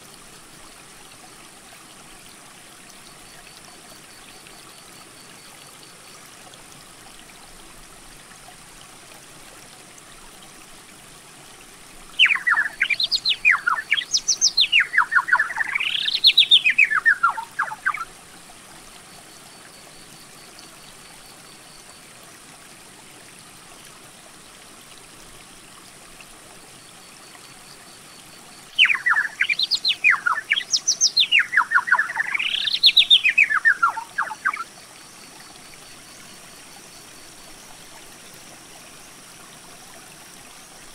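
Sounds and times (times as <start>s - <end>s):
songbird singing: 12.2s - 18.1s, 28.6s - 34.7s.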